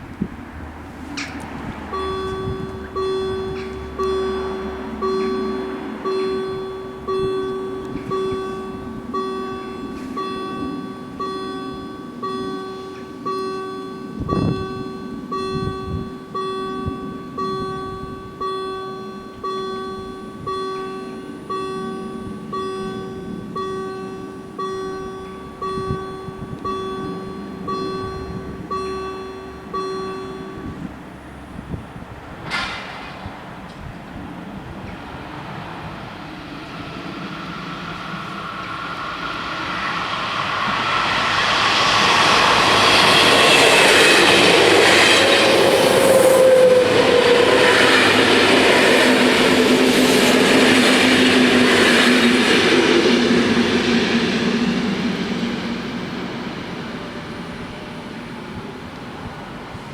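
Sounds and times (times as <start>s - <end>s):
level crossing bells ringing: 1.1s - 32.4s, 40.8s - 59.0s.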